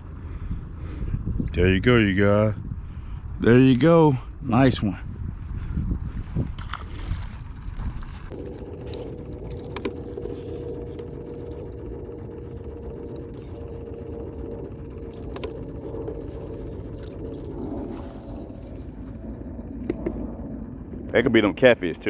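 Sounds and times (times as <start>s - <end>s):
low rumble: 7.4s - 22.0s
small motor whining: 8.3s - 22.0s.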